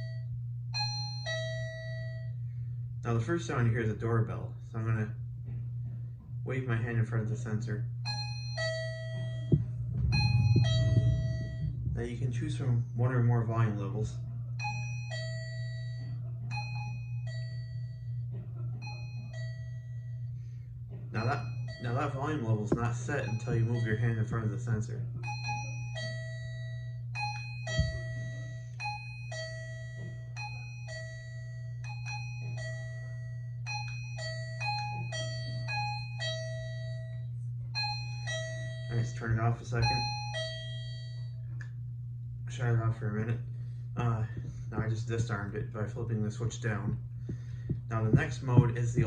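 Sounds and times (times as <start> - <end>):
two-note doorbell chime: 0.0 - 2.4, 8.0 - 12.0, 14.6 - 18.1, 18.8 - 20.1, 21.2 - 24.4, 25.2 - 41.4
steady low hum: 0.0 - 49.0.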